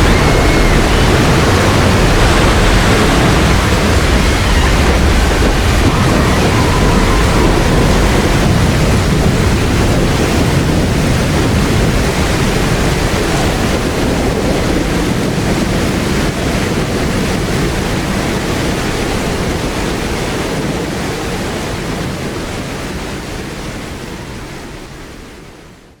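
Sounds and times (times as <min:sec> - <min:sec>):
deep rumble: 0:00.0 - 0:18.4
rushing wind-like noise: 0:00.0 - 0:26.0.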